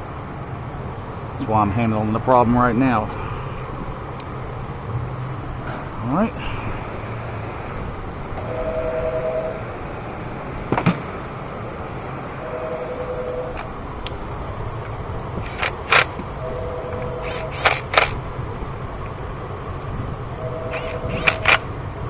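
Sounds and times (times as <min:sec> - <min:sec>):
tools clicking and knocking: 0:15.4 - 0:16.3, 0:17.2 - 0:18.2.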